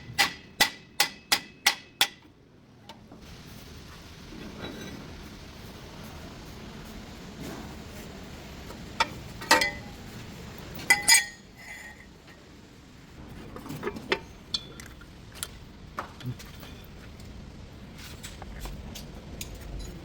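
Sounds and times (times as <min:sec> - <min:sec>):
metal tools clinking and knocking: 0:09.0 - 0:09.9, 0:10.8 - 0:12.1, 0:19.4 - 0:20.0.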